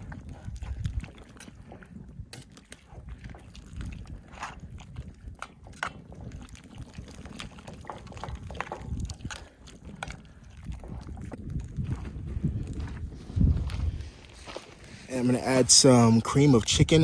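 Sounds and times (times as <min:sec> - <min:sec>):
broth sloshing and bubbling: 0:00.0 - 0:17.0.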